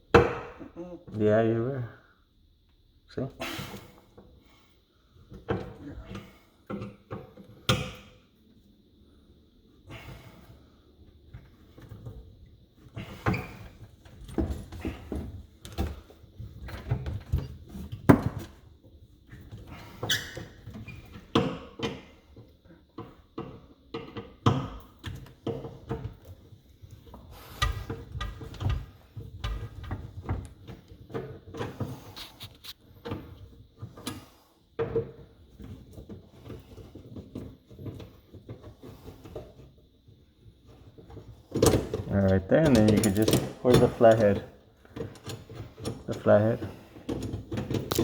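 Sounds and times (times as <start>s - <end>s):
hand tools knocking and clicking: 42.6s - 44.4s.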